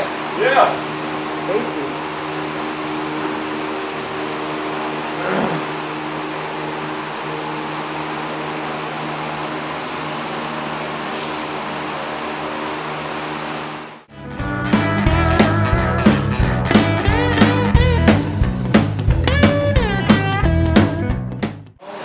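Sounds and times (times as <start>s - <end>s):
machine humming with hiss: 0.0s - 14.1s.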